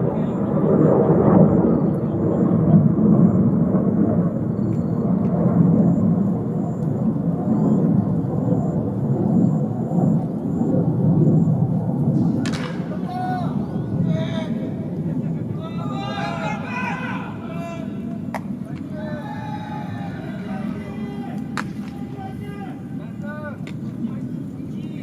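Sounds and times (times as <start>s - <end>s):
ballpark crowd murmur: 0.0s - 4.3s, 11.6s - 25.0s.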